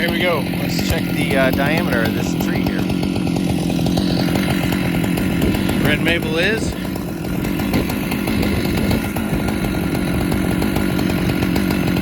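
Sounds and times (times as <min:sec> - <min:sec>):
chainsaw engine running: 0:00.0 - 0:12.0.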